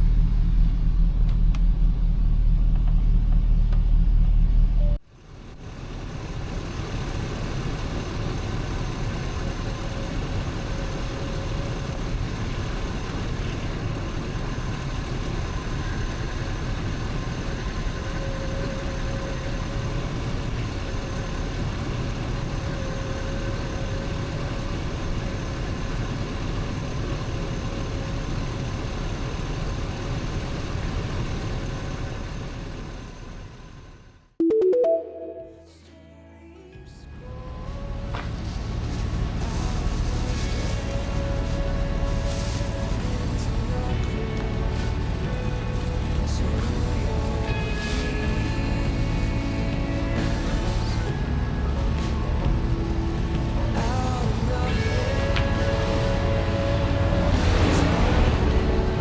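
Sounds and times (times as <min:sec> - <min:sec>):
car engine idling: 0:00.0 - 0:05.0, 0:37.1 - 0:59.0.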